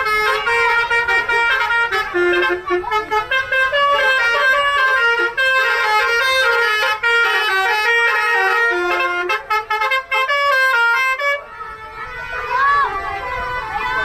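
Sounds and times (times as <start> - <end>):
multi-tone air horn melody: 0.0 - 14.0.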